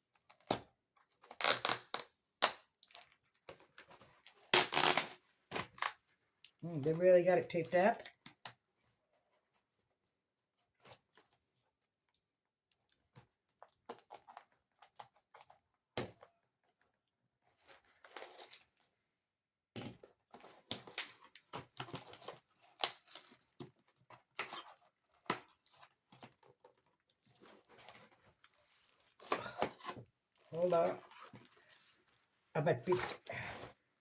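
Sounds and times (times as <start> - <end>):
packing tape tearing: 1.2 - 3.1, 4.3 - 6.0, 20.7 - 23.6.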